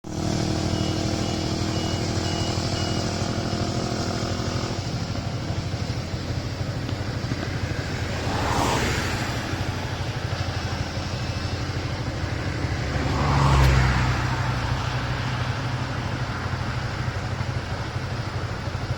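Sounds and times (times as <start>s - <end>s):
excavator diesel engine running: 0.0s - 18.9s
high warning beeps: 0.2s - 5.9s.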